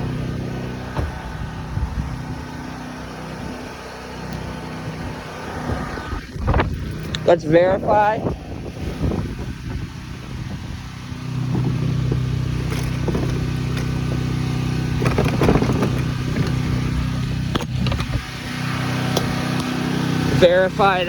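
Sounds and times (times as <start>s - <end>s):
generator engine running: 0.0s - 21.0s
handling knocks: 11.6s - 16.8s.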